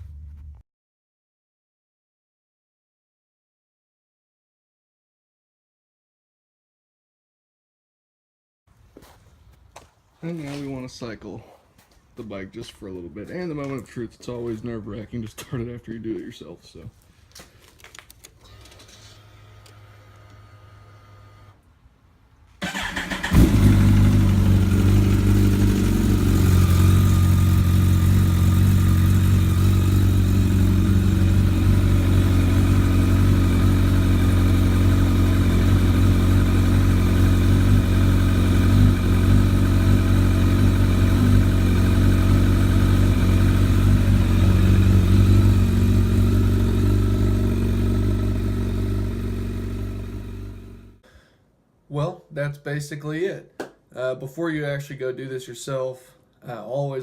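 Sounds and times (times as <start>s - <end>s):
motorcycle engine starting and idling: 22.6s - 51.0s.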